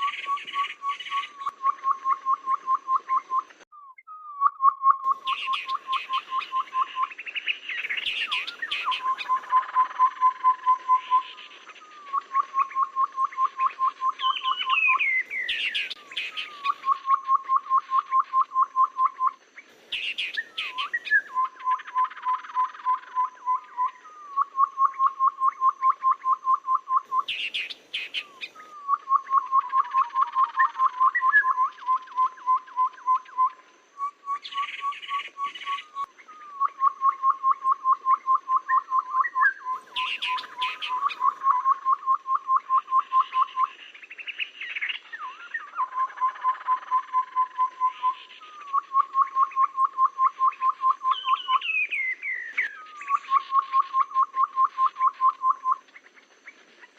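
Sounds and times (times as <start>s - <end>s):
bird rapid piping notes: 0.0s - 19.3s, 34.3s - 44.4s
bird chattering calls: 5.0s - 10.1s, 19.9s - 22.9s, 27.0s - 31.6s, 39.7s - 42.0s.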